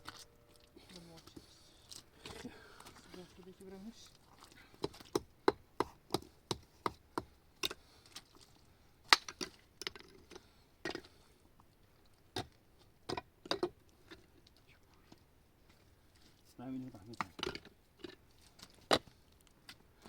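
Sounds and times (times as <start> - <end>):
hatchet chopping wood: 4.8 - 7.8.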